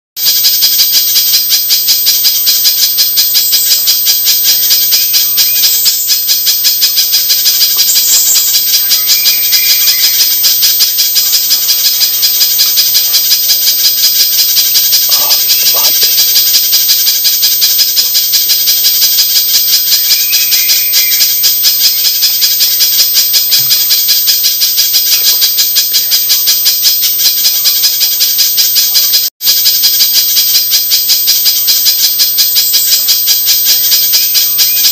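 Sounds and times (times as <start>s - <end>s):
bird calling in sharp chips: 3.3s - 17.2s, 19.6s - 22.8s, 24.7s - 25.6s, 32.7s - 34.9s.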